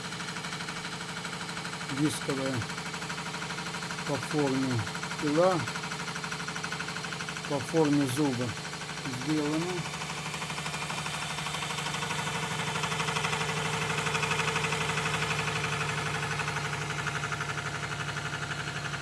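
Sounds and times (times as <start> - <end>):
cutter chatter: 7.5 - 9.9.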